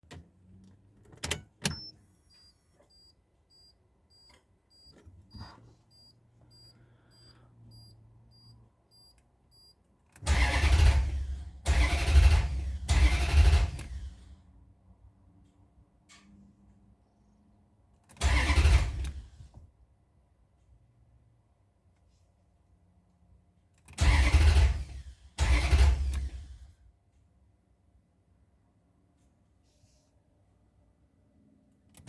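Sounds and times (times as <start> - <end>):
car engine cranking: 10.2 - 14.4, 18.1 - 19.4, 23.9 - 26.6.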